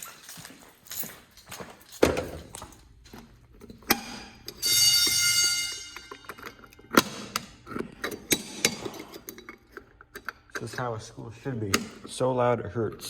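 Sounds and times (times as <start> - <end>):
sharp clicks and knocks: 2.0 - 5.2, 5.8 - 13.0
fire alarm horn blast: 4.6 - 6.7.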